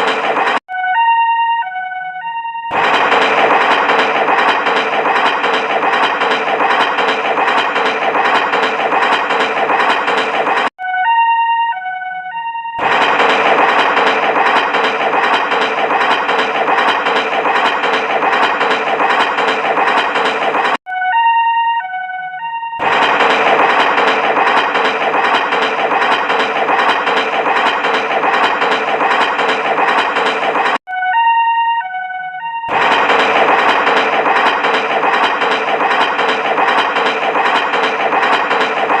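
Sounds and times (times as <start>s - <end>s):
harsh dense electronic noise: 0.0s - 0.6s, 2.7s - 10.7s, 12.8s - 20.8s, 22.8s - 30.8s, 32.7s - 39.0s.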